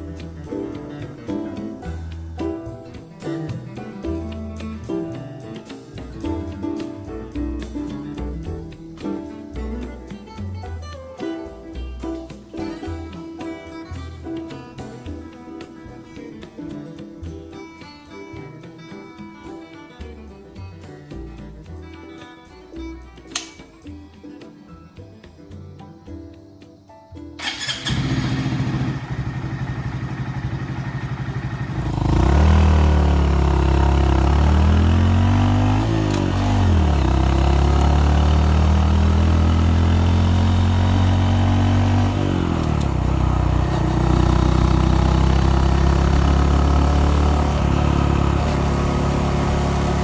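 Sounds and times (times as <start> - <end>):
motorcycle engine running: 27.4 - 50.0.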